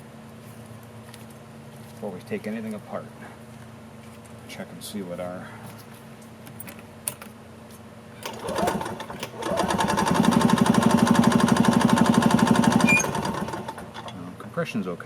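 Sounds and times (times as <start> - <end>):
engine cranking without starting: 8.2 - 14.2.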